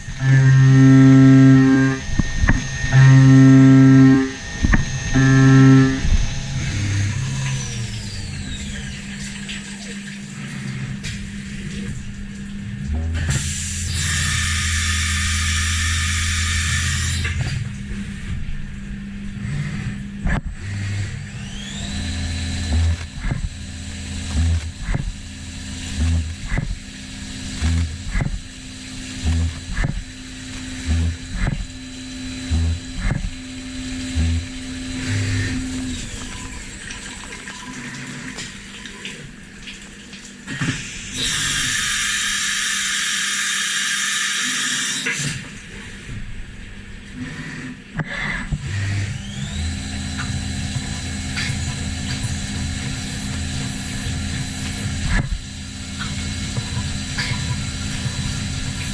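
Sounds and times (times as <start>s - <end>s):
milling machine spindle whine: 0.0s - 39.3s, 40.6s - 58.9s
sharp clicks with low thuds: 22.6s - 23.6s, 25.9s - 26.9s, 27.5s - 28.6s, 29.2s - 31.8s, 32.5s - 33.4s.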